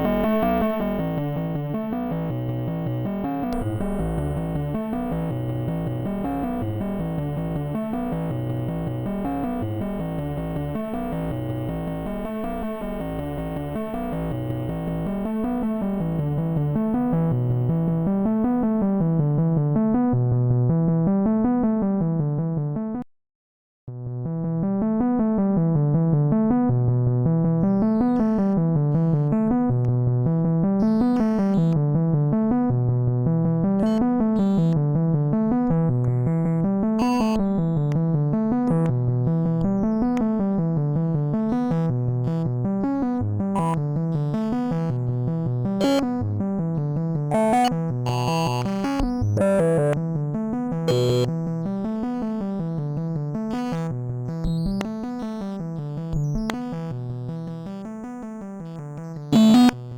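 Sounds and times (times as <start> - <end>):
distorted synthesizer bass sequence: 0.0 - 18.4, 33.8 - 34.8, 35.8 - 38.0, 43.6 - 46.3, 47.3 - 50.0, 50.9 - 51.3, 58.6 - 59.9.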